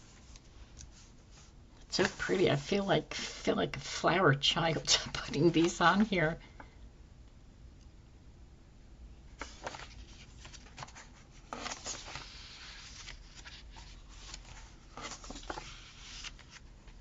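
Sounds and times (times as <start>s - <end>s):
paper rustling and crinkling: 9.4s - 17.0s.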